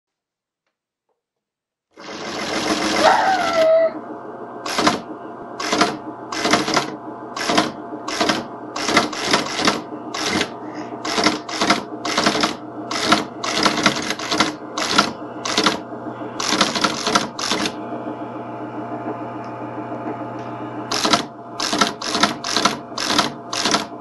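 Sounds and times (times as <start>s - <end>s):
teleprinter motor humming: 2.0s - 24.0s
printing mechanism clattering: 4.6s - 15.8s, 16.4s - 17.8s, 20.9s - 24.0s.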